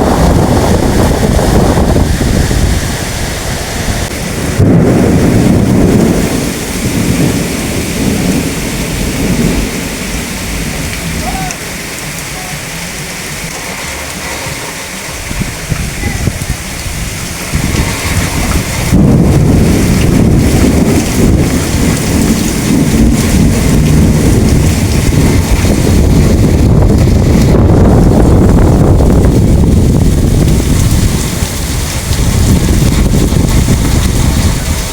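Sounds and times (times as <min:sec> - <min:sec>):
heavy rain: 0:00.0 - 0:34.9
rolling thunder: 0:00.0 - 0:34.9.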